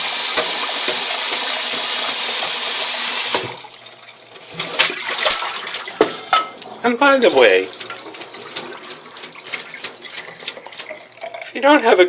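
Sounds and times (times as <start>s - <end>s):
water running from a tap: 0.0s - 12.0s.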